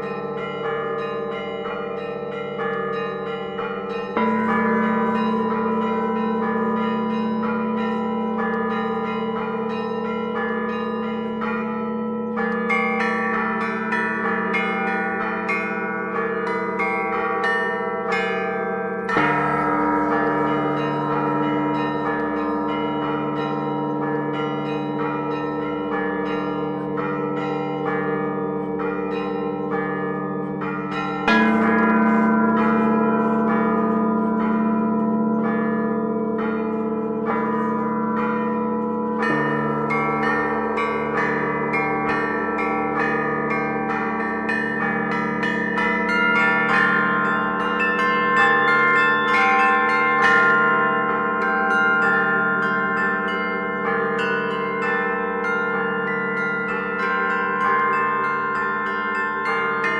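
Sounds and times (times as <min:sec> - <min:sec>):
hum of large bells: 0:00.0 - 0:59.9
small church bells ringing: 0:00.0 - 0:59.9
heavy bell strike: 0:16.3 - 0:57.4.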